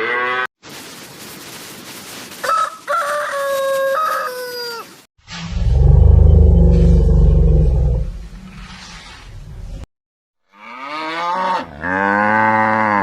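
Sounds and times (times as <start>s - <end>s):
rooster crowing: 2.4s - 5.0s
deep low animal call: 5.3s - 9.8s.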